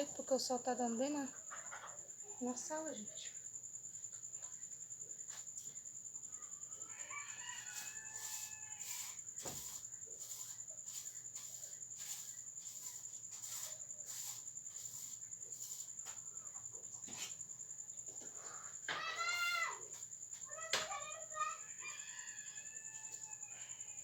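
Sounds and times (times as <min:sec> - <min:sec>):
rooster crowing faintly: 0:06.3 - 0:11.0, 0:21.4 - 0:24.0.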